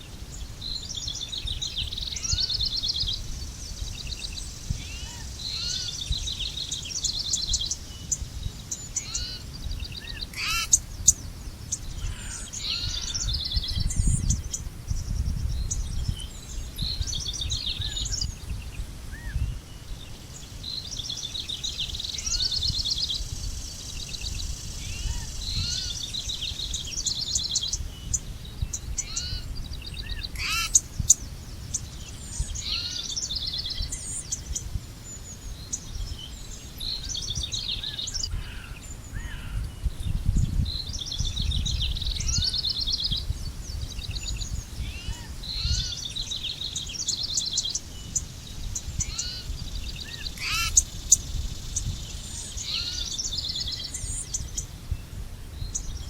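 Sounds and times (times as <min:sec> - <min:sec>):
birds singing and chirping: 0:00.0 - 0:56.0
sharp bird chips: 0:50.4 - 0:50.8.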